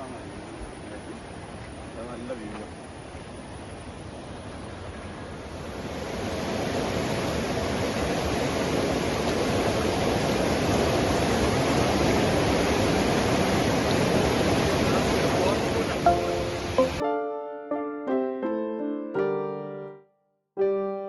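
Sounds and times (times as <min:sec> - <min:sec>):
waterfall rushing: 0:05.7 - 0:17.0.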